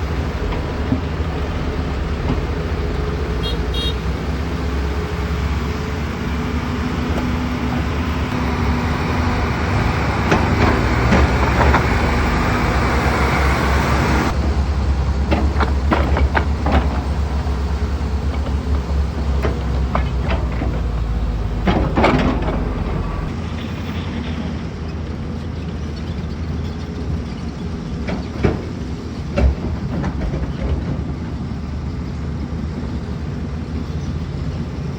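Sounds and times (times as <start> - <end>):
excavator diesel engine rumbling: 0.0 - 34.9
metal clanks and knocks: 10.0 - 12.4, 15.2 - 24.5.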